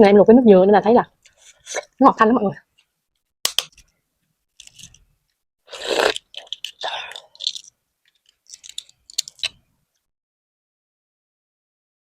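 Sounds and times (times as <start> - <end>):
sharp clicks: 3.4 - 3.9
wet chewing sounds: 5.7 - 9.6.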